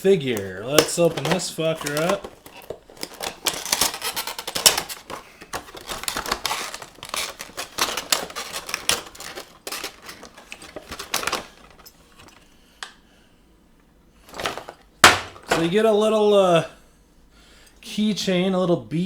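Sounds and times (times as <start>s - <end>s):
packaging clicking and crinkling: 0.1s - 13.0s, 14.3s - 15.9s.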